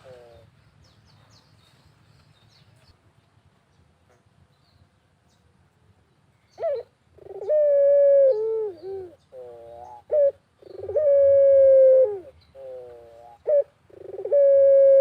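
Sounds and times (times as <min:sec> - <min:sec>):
dove cooing: 0:00.0 - 0:00.5, 0:06.6 - 0:15.0.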